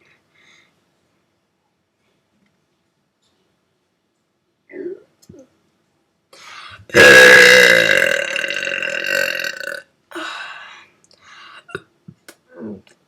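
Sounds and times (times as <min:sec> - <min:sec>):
person belching: 0:06.9 - 0:09.8.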